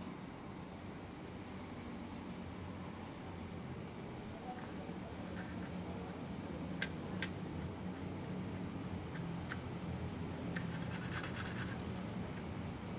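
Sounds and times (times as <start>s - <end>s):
small parts and tools clicking: 6.8s - 7.4s.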